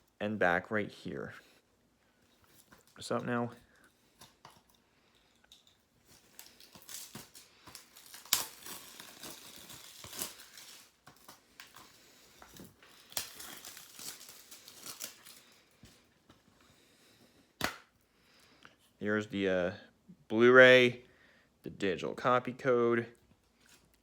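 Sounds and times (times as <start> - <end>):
plastic wrapping crinkling: 2.2 - 16.4.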